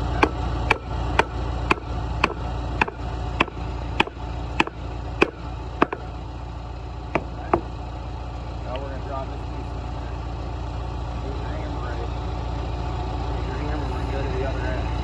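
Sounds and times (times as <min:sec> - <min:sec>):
engine idling: 0:00.0 - 0:15.0
ringing hammer strikes: 0:00.2 - 0:06.1.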